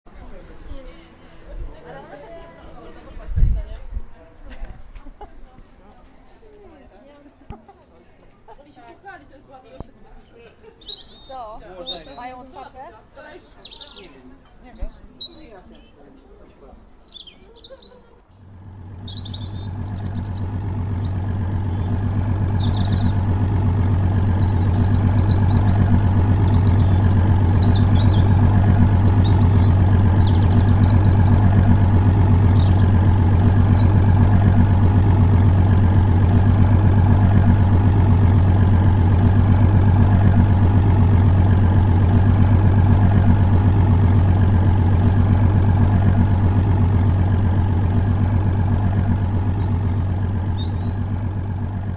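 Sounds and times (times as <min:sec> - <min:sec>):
birds chirping: 0:10.4 - 0:51.9
low mechanical drone: 0:18.4 - 0:51.9.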